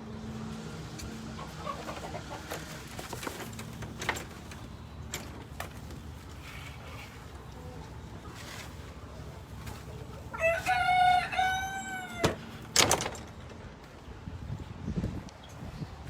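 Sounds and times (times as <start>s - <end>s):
hens clucking: 0.3s - 4.8s, 5.4s - 12.7s.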